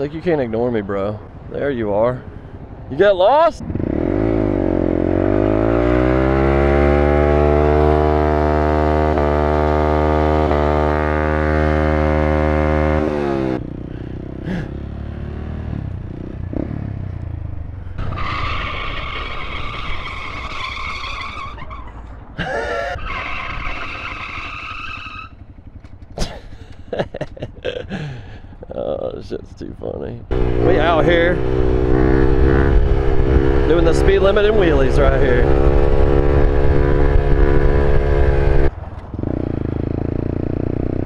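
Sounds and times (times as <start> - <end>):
road and wind noise: 0.0 - 41.0
small motorcycle engine revving: 3.6 - 17.0, 30.3 - 41.0.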